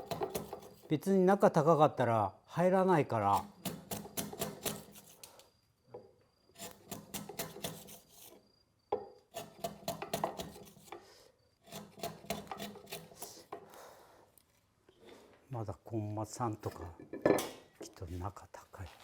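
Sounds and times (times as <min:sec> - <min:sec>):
hand tool scraping wood: 0:00.0 - 0:01.0, 0:03.3 - 0:05.4, 0:06.6 - 0:08.4, 0:09.3 - 0:13.9.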